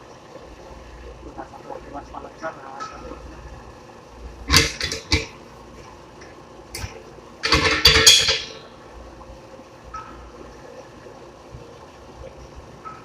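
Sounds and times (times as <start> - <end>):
hard objects clanking: 4.5 - 5.4, 6.8 - 8.7.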